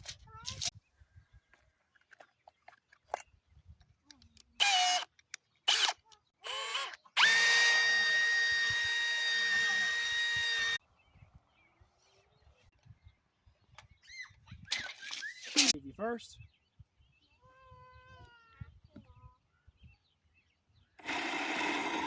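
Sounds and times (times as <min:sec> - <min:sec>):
power drill running: 0:05.7 - 0:10.8, 0:21.0 - 0:22.0.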